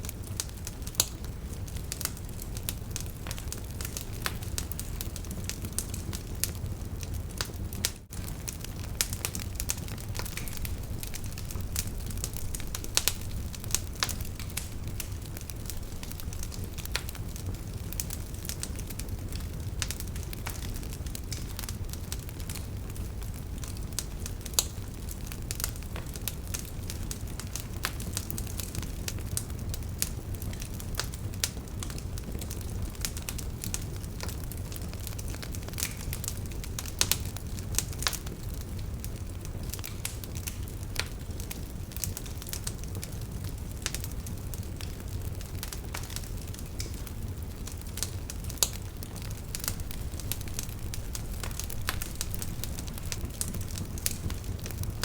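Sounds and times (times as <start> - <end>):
campfire crackling and popping: 0.0 - 55.0
low rumble of flames: 0.0 - 55.0.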